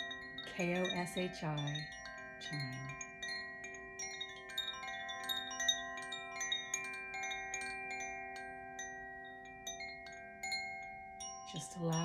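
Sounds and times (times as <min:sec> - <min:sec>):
wind chime ringing: 0:00.0 - 0:12.0.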